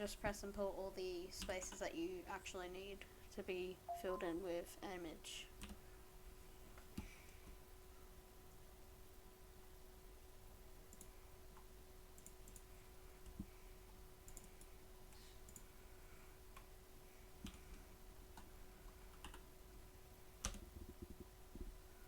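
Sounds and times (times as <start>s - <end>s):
faint steady hum: 0.0s - 22.0s
computer mouse clicks: 10.9s - 13.5s, 14.2s - 15.7s.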